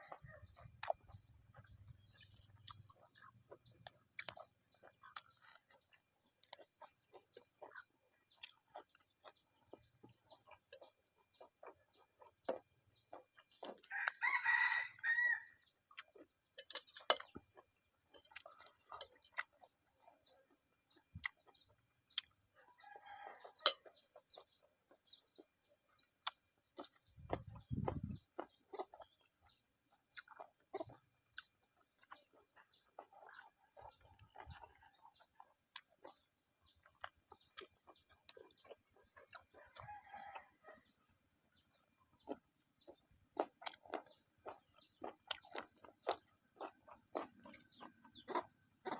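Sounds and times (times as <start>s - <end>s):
rooster crowing: 13.9s - 15.6s.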